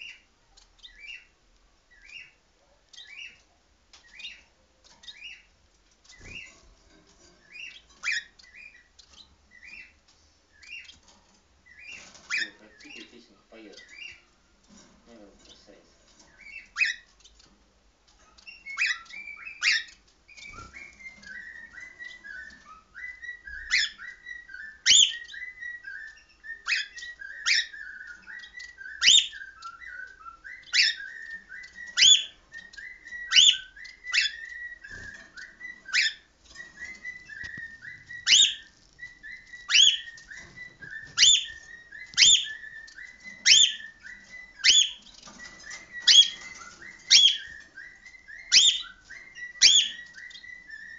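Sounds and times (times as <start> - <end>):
sharp cockatiel calls: 18.5 - 50.9.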